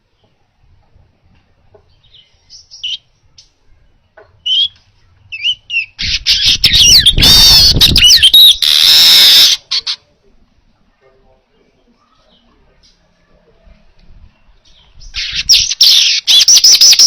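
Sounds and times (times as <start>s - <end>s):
bird chirps: 1.7s - 10.0s, 14.2s - 17.0s.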